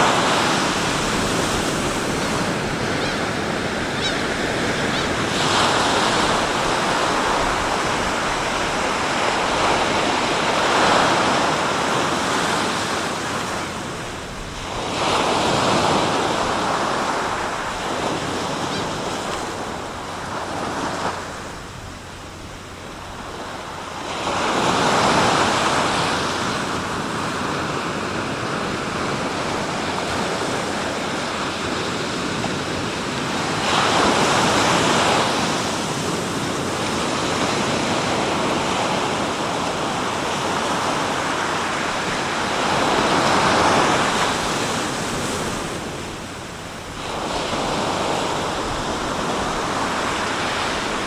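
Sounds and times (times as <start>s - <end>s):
sea waves breaking on shore: 0.0s - 51.0s.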